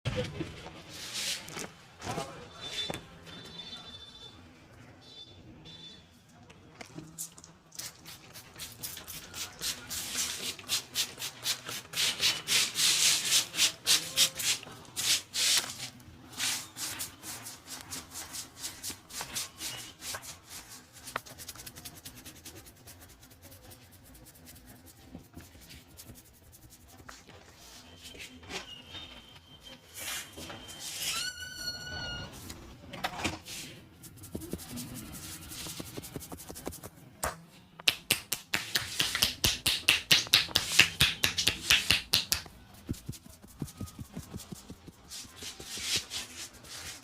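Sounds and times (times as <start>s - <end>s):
hands rubbing through hair: 34.0s - 37.0s, 37.9s - 47.0s.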